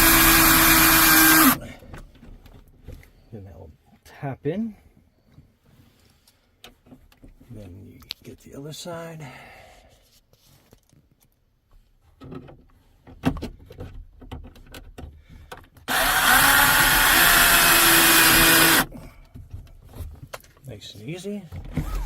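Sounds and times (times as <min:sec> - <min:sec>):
cordless screw gun driving screw: 0:00.0 - 0:01.6, 0:15.9 - 0:18.9.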